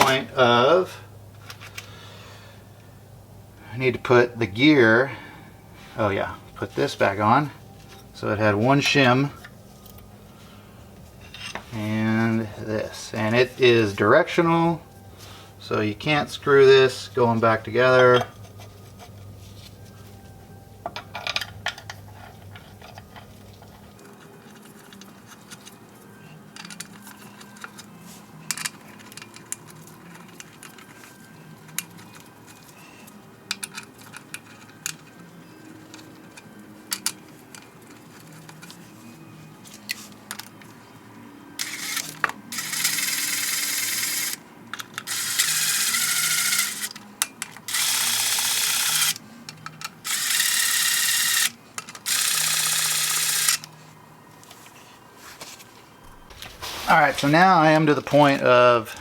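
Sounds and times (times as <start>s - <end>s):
metal parts clinking: 11.2s - 11.9s.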